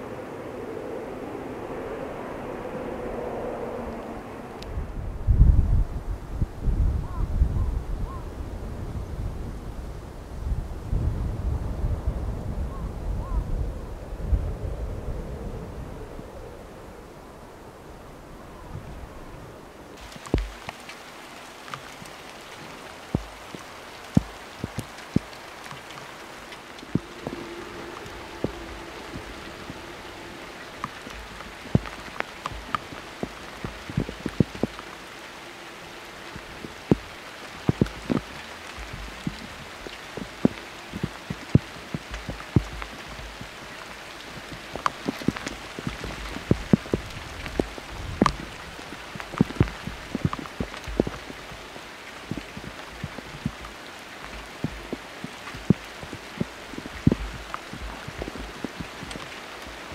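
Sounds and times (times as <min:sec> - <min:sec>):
heavy rain: 0:00.0 - 0:59.9
wind rumbling on microphone: 0:00.0 - 0:59.9
raindrops tapping on surface: 0:20.0 - 0:59.9.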